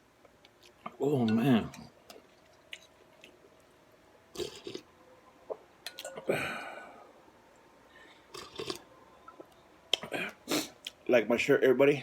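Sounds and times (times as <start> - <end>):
chewing and slurping: 0.5 - 3.6, 4.3 - 4.9, 8.3 - 11.0.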